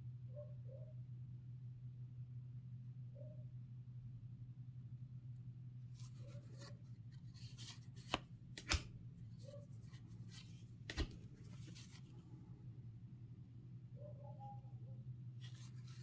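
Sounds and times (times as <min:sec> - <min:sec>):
packaging rustling and scraping: 0:09.4 - 0:12.2.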